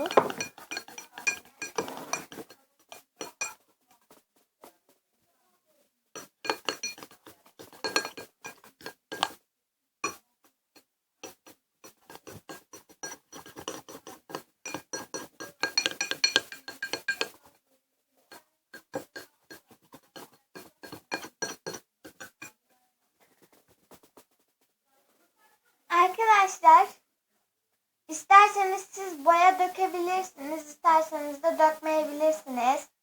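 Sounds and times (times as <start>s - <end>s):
spoon clinking against a bowl: 0.0s - 3.6s, 6.2s - 9.4s, 11.2s - 17.4s, 18.8s - 22.5s.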